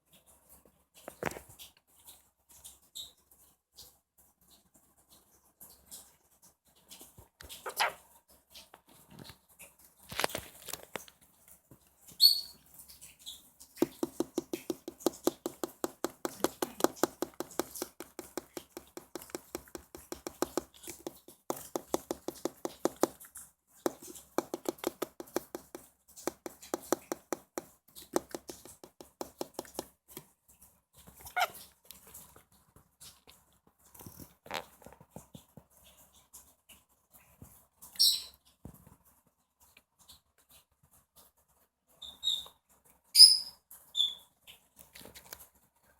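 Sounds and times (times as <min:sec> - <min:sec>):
lovebird chirping: 0:07.7 - 0:08.0, 0:12.2 - 0:12.6, 0:43.2 - 0:44.2
rapid clicking taps: 0:13.8 - 0:23.2, 0:23.9 - 0:29.9.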